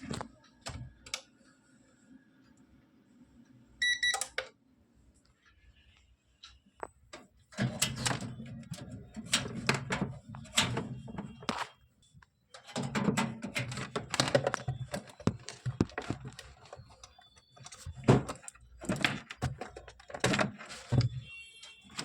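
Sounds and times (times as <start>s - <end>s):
hard objects knocking: 12.8s - 21.2s.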